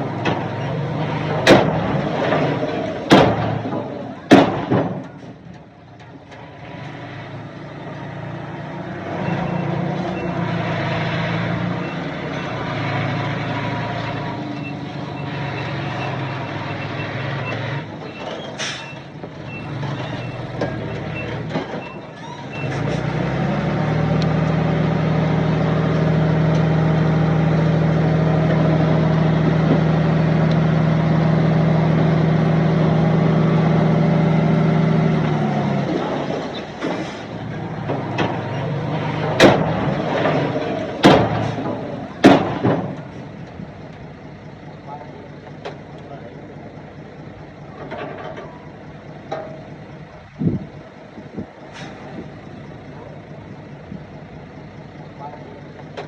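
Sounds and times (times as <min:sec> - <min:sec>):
loud bangs: 0:00.0 - 0:05.6, 0:35.7 - 0:43.4
diesel engines running: 0:00.0 - 0:56.0
reversing beep: 0:09.2 - 0:10.4, 0:14.6 - 0:20.5, 0:21.1 - 0:22.8.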